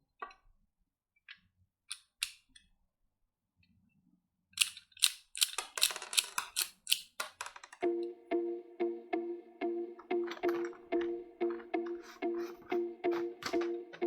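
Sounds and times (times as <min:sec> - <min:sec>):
toy rifle mechanical clicks: 0:04.6 - 0:07.4.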